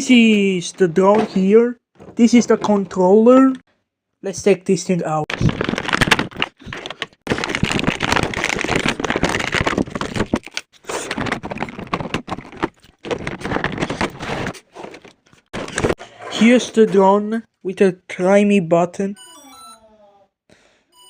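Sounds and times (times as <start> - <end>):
packaging rustling and scraping: 5.3 - 16.4.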